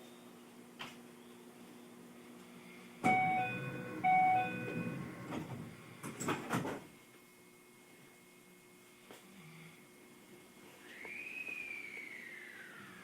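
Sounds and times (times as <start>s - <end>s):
train low hum: 2.9s - 6.2s
two-note door chime: 3.0s - 5.1s.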